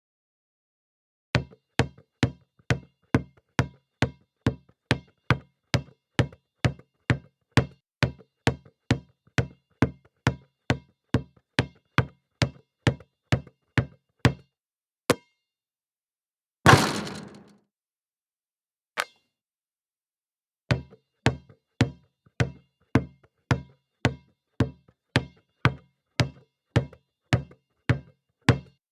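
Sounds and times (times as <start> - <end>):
basketball bouncing on hard floor: 16.7 - 17.5
loud ringing hit: 16.7 - 17.5.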